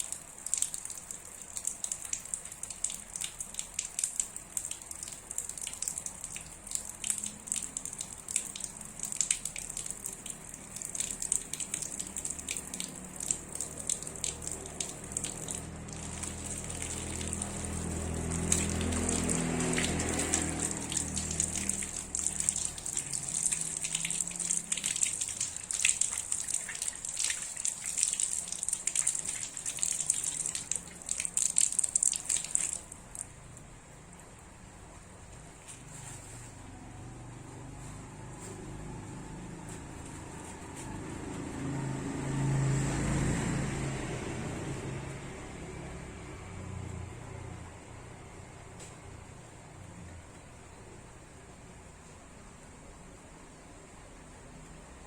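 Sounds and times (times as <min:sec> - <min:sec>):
water running from a tap: 0:00.0 - 0:33.3.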